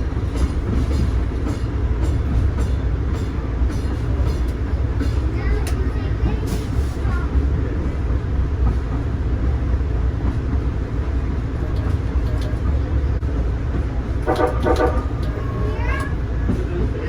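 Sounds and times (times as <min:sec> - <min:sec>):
light rail car rumbling on track: 0:00.0 - 0:17.0.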